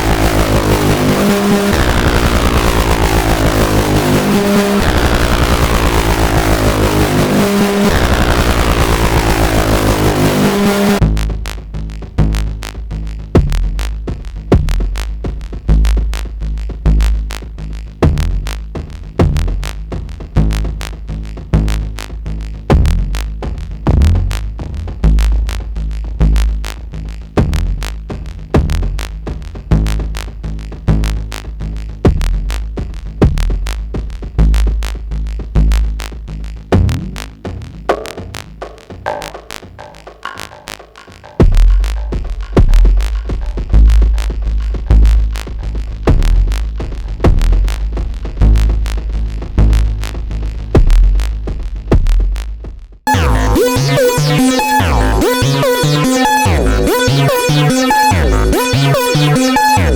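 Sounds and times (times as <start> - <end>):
harsh pulsing synthesizer buzz: 0.0 - 11.1, 41.4 - 47.9, 53.1 - 59.9
deep synth bass notes: 0.0 - 38.0, 41.4 - 59.9.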